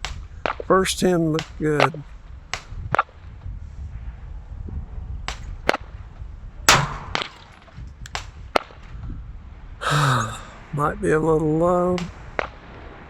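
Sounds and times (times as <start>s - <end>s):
wind rumbling on microphone: 0.0s - 13.0s
gunshots: 1.3s - 2.0s, 6.7s - 7.8s.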